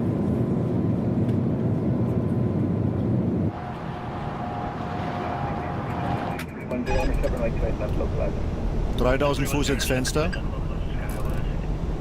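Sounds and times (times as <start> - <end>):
cockpit airflow and systems noise: 0.0 - 12.0.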